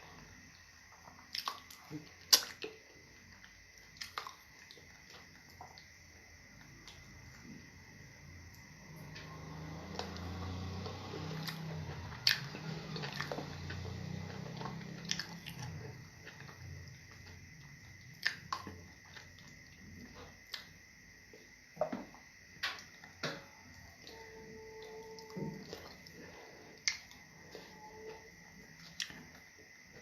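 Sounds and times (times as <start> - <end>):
wet chewing: 12.2 - 17.4.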